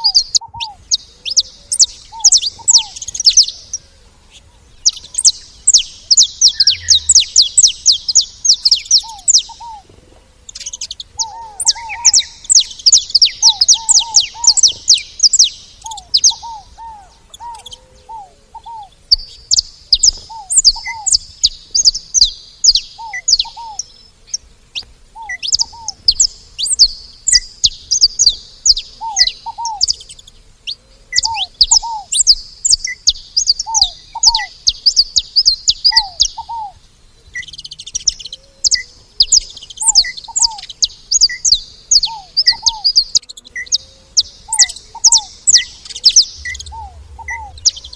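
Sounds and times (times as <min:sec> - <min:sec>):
low short bird call: 0:00.0 - 0:09.8, 0:43.6 - 0:47.9
finches chirping and singing: 0:00.0 - 0:47.9.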